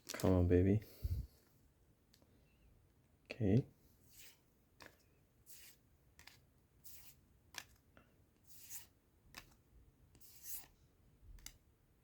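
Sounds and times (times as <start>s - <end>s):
trading cards swishing: 4.1s - 7.8s, 8.5s - 9.6s, 10.2s - 10.8s.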